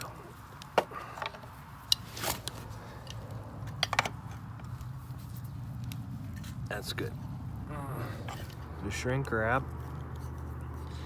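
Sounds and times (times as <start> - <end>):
hand tools clicking and knocking: 0.0 - 4.9.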